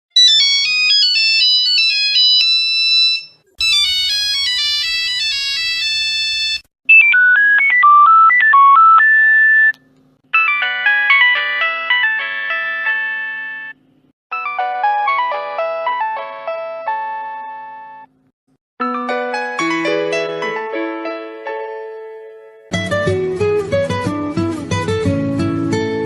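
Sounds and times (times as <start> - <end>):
phone ringtone melodies: 0.2 - 9.7, 10.3 - 18.1, 18.8 - 21.0.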